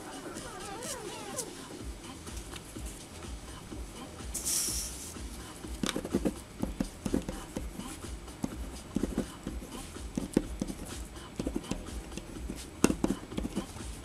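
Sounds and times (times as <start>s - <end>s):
brief hiss: 4.4s - 5.2s
pen writing on paper: 5.8s - 13.7s.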